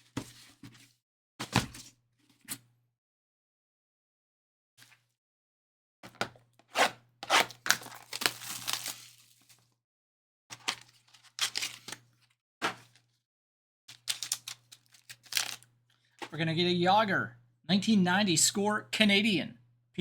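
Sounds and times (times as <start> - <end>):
seal tearing: 14.1 - 15.6.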